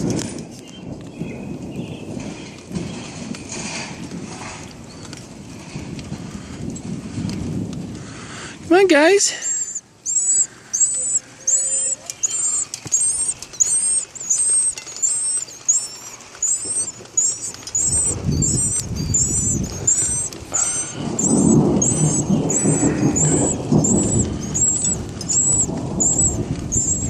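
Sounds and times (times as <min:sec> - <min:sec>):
baby birds begging chirps: 0:08.1 - 0:27.0
low rumbling noise: 0:09.4 - 0:27.0.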